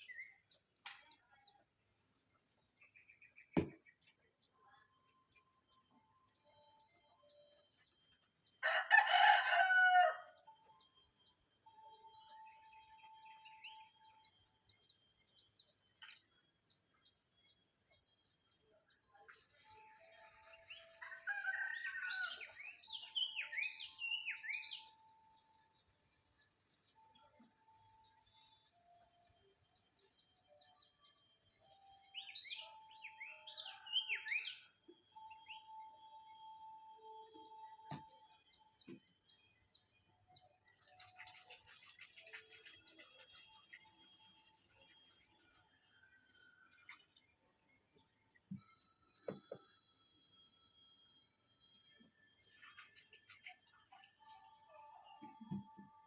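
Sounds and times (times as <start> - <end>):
rooster crowing: 8.6 - 10.4, 21.0 - 22.6
faint bird chirps: 10.6 - 47.5, 48.3 - 56.0.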